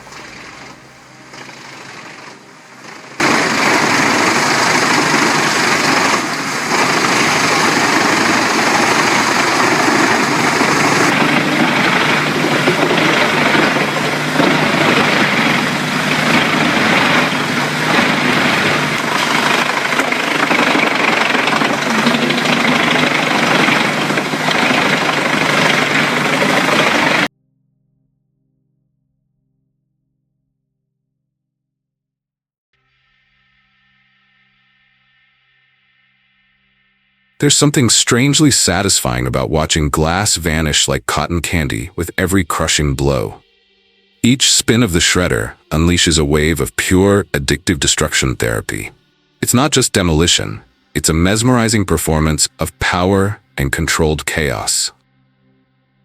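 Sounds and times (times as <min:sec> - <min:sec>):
wood chipper chipping logs: 0:00.0 - 0:27.3.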